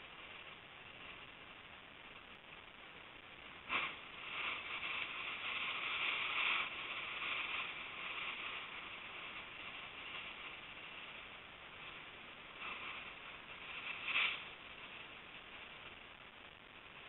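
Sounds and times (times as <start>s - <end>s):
hissing wash of surf: 3.4s - 15.2s.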